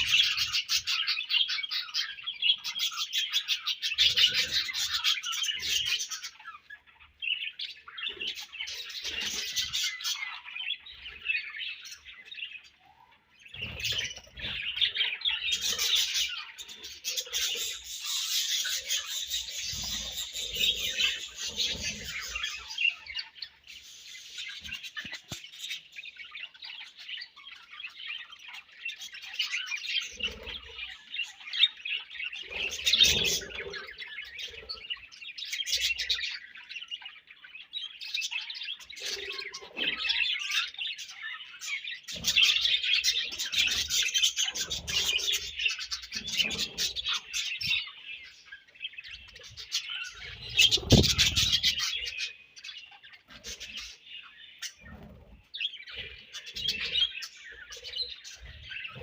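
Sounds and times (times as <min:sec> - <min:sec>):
squawky bird calls: 0:00.0 - 0:25.9, 0:38.4 - 0:59.0
budgerigars chirping and chattering: 0:00.0 - 0:59.0.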